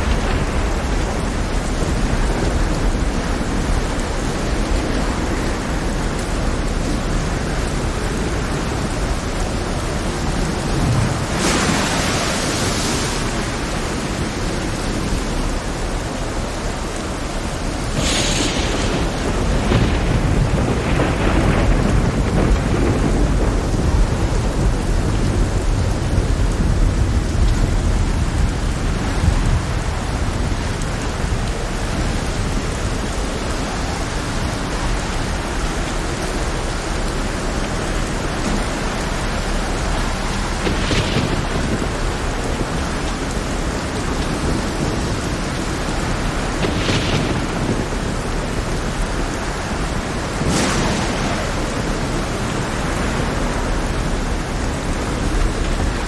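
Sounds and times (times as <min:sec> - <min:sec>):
steady rain hiss: 0:00.0 - 0:56.0
thunder rumbling and crashing: 0:00.0 - 0:56.0.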